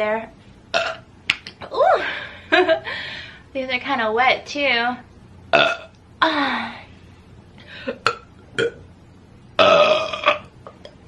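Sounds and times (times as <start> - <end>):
woman burping: 0.8 - 1.0, 5.6 - 5.9, 7.9 - 8.8, 9.6 - 11.0.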